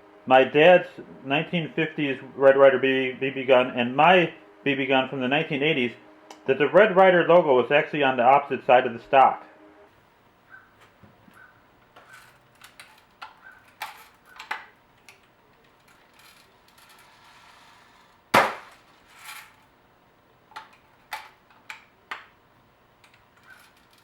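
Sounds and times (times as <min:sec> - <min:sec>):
loud sharp gunshot: 0:18.3 - 0:18.8.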